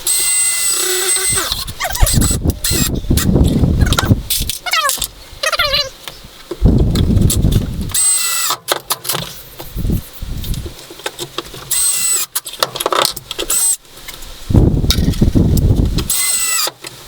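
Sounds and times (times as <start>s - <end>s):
power tool whining: 0.0s - 4.5s, 7.0s - 8.6s, 11.7s - 12.4s, 15.0s - 16.8s.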